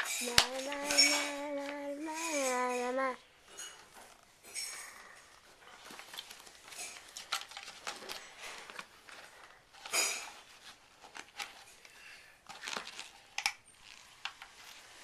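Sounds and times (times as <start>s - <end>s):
packaging rustling: 5.4s - 15.0s.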